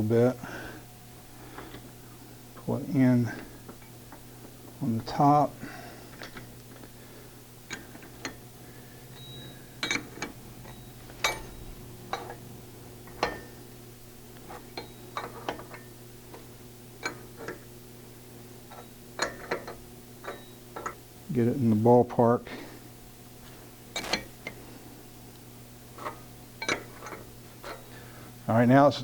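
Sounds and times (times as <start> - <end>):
wrench metallic clicks: 9.8 - 12.4.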